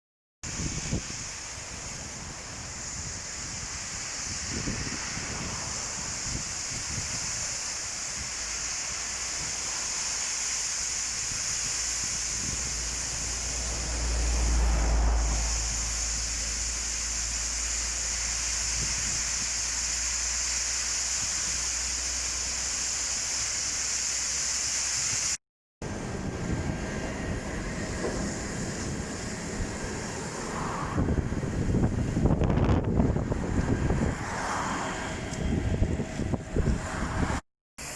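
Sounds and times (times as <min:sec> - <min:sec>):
wind buffeting microphone: 0:00.4 - 0:08.4, 0:11.2 - 0:15.4, 0:25.8 - 0:37.4
high-pitched hiss: 0:00.4 - 0:35.0.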